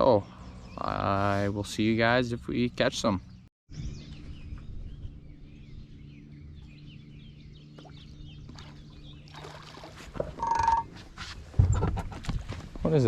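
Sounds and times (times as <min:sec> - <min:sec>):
small birds chirping: 0:00.0 - 0:11.9
steady low hum: 0:03.2 - 0:11.5
short beep: 0:10.4 - 0:10.9.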